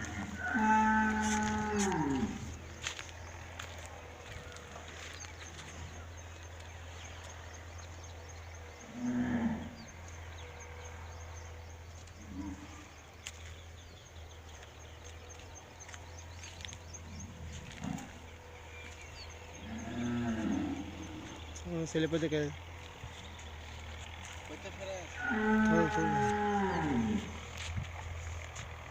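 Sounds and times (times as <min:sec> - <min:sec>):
cattle mooing: 0:00.0 - 0:02.6, 0:08.8 - 0:10.0, 0:17.0 - 0:21.5, 0:24.6 - 0:27.6
steady low hum: 0:00.0 - 0:28.9.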